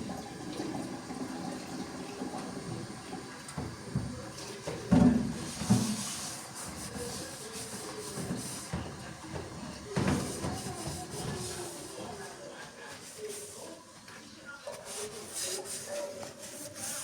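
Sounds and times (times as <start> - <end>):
water running: 0.0 - 12.4.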